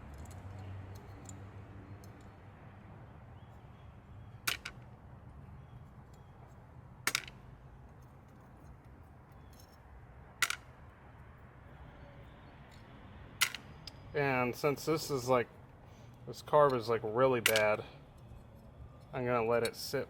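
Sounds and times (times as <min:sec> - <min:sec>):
metal parts clicking: 0:00.0 - 0:02.4, 0:16.6 - 0:20.0.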